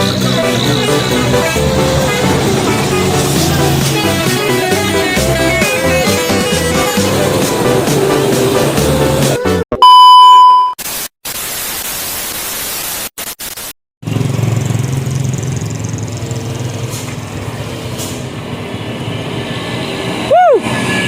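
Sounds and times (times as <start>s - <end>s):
truck engines climbing a hill: 0.0s - 9.6s, 14.1s - 21.0s
electronic beep: 9.8s - 10.8s.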